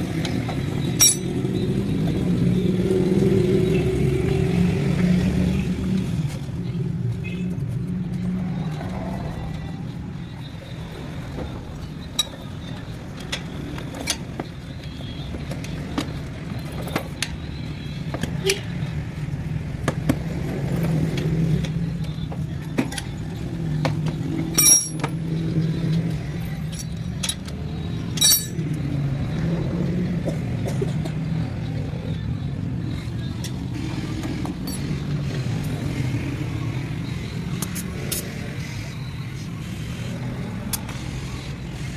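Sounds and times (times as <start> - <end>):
low engine-like hum: 0.0 - 41.9
tools clicking and tapping: 0.2 - 1.4, 12.1 - 12.4, 23.8 - 25.3, 26.6 - 28.8
ringing metal clinks: 0.9 - 1.4, 24.5 - 25.1, 28.1 - 28.7.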